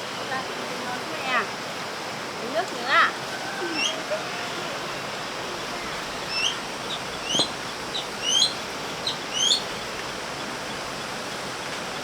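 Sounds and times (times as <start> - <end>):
bird chirping: 5.8 - 9.7.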